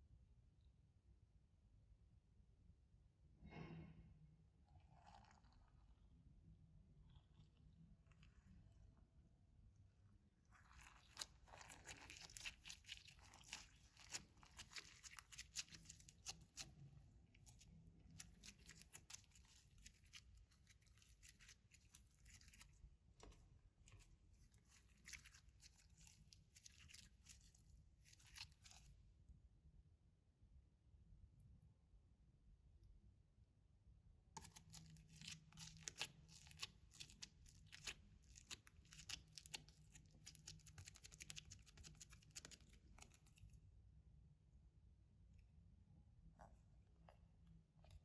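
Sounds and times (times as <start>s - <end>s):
slime crackling and popping: 10.6s - 16.7s, 17.4s - 22.8s, 34.4s - 43.4s.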